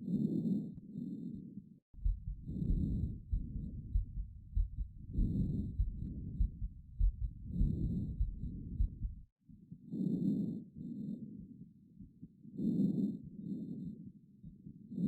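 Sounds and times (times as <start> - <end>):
heartbeat thumps: 2.0 - 9.3.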